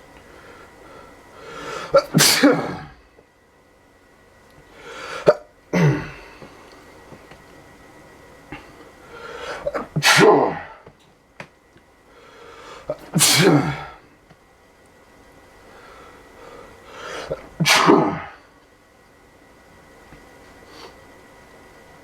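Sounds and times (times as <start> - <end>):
person sneezing: 1.7 - 3.0, 5.1 - 6.5, 9.5 - 10.9, 12.9 - 14.0, 17.1 - 18.4
drawn-in breath: 12.1 - 13.0.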